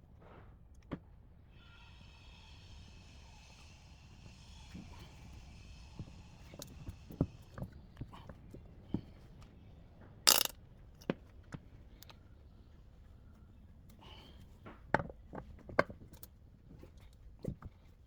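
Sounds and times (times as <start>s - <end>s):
metal parts and tools clicking: 10.3s - 10.5s.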